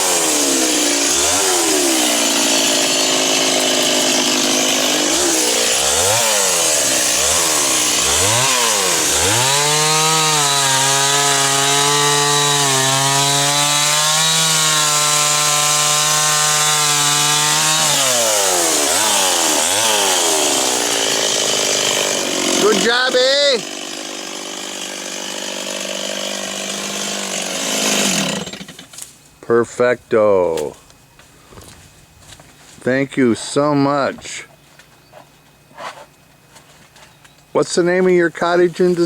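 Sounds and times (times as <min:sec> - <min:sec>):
chainsaw revving: 0:00.0 - 0:28.9.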